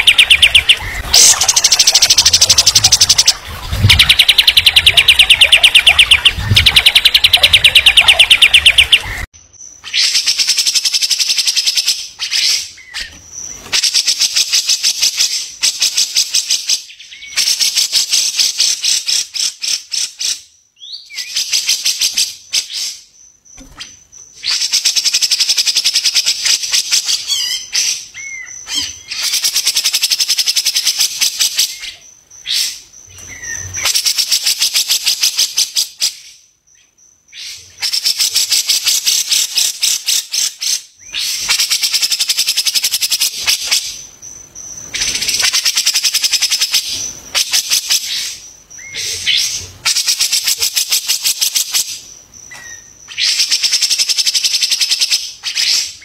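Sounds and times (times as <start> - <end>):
songbird rattling trills: 0.0 - 9.3.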